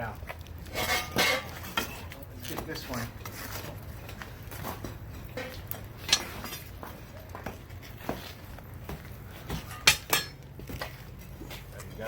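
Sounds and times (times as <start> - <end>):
metal tongs knocking on bricks: 9.6 - 10.4.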